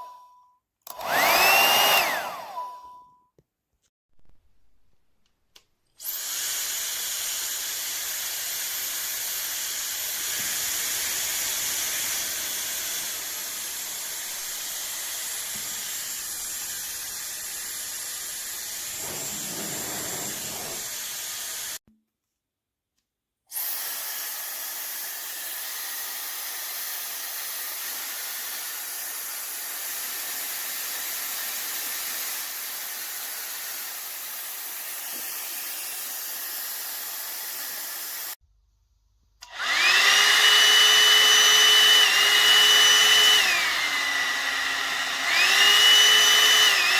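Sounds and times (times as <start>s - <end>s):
hair dryer running: 0.9s - 2.6s, 39.4s - 46.9s.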